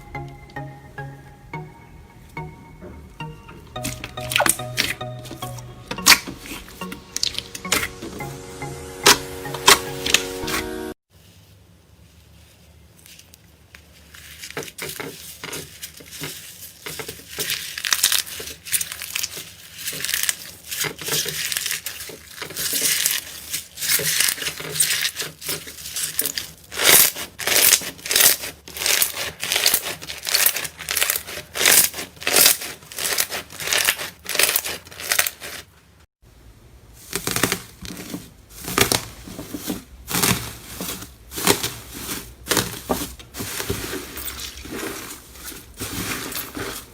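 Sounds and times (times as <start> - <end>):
slime squishing by hand: 12.9 - 35.7, 37.0 - 46.9.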